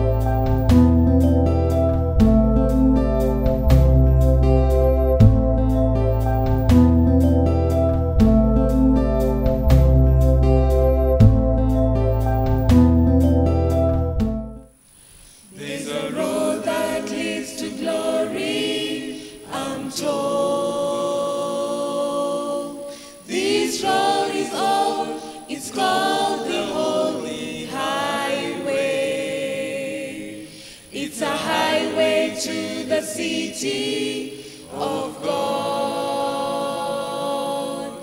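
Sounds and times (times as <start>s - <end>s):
choir singing a cappella: 15.4s - 38.0s.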